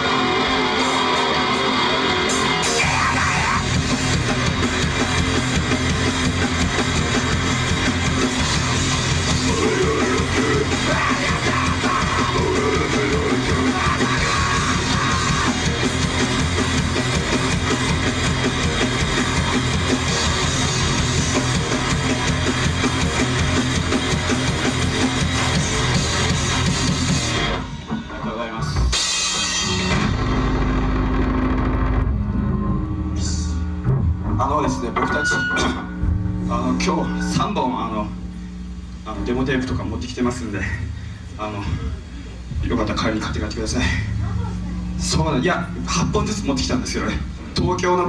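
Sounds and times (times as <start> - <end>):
bass guitar: 0.0 - 48.0
distorted electric guitar: 0.0 - 48.0
drums: 0.0 - 48.0.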